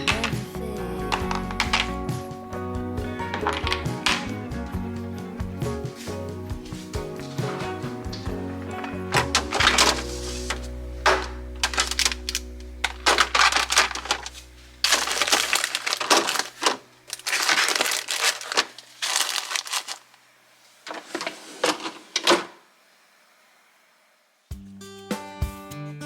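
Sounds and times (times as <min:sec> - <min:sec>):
background music: 0:00.0 - 0:18.2
plastic crinkling and rustling: 0:01.1 - 0:02.1, 0:03.3 - 0:04.4, 0:08.7 - 0:22.6.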